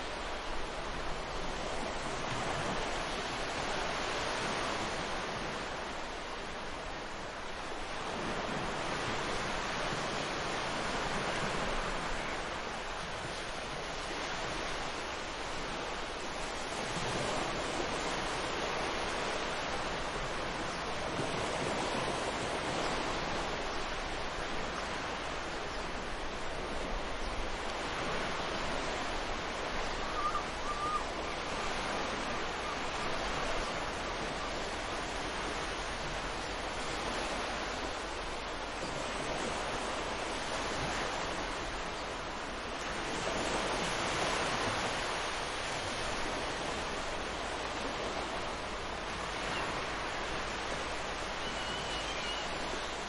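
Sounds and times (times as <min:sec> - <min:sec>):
ocean waves washing on shore: 0:00.0 - 0:53.0
bird chirp: 0:51.4 - 0:52.5.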